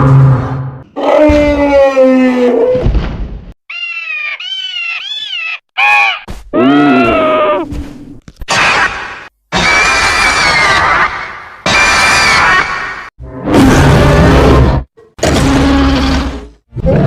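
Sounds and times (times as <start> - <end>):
high wavering screeching calls: 3.7 - 6.2.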